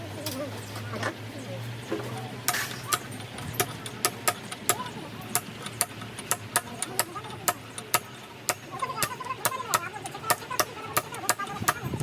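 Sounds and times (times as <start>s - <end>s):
sharp taps and clicks: 2.5s - 11.8s.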